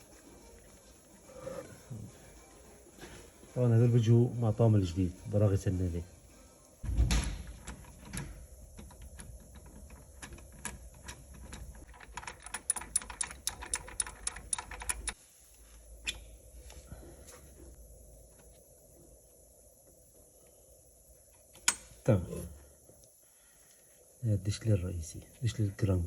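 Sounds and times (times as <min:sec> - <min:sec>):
hand tools clicking on metal: 0:07.6 - 0:15.2.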